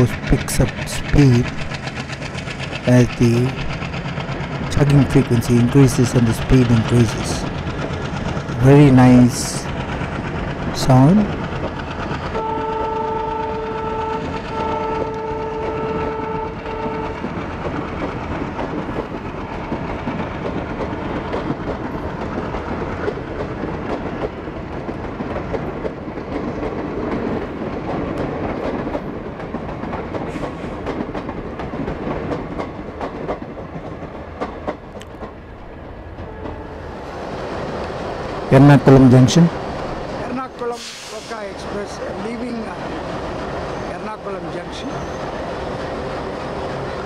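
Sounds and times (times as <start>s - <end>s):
wheels clicking over rail joints: 0.0s - 8.6s, 9.5s - 38.5s
diesel engine rumbling: 0.0s - 21.1s
locomotive horn blast: 12.3s - 17.3s, 36.3s - 36.8s.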